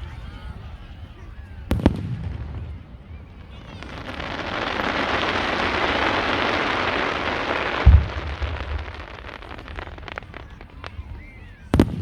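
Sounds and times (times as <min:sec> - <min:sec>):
fireworks crackling: 0:00.0 - 0:12.0
deep firework boom: 0:01.7 - 0:12.0.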